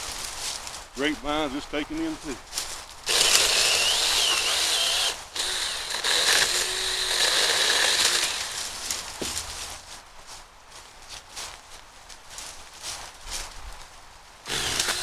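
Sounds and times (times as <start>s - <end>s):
electric chainsaw cutting vines: 3.0s - 9.2s, 14.5s - 15.0s.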